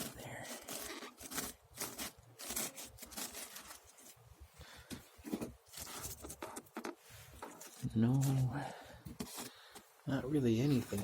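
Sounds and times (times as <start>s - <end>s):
papery wasp nest crackling and tearing: 0.0s - 4.2s.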